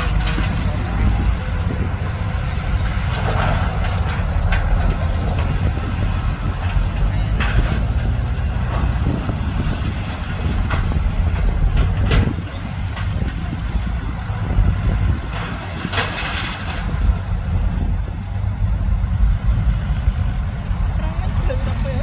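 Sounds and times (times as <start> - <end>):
metal clanks and scrapes: 0.0 - 1.9, 2.7 - 13.9, 15.1 - 17.2
diesel machinery rumbling: 0.0 - 22.0.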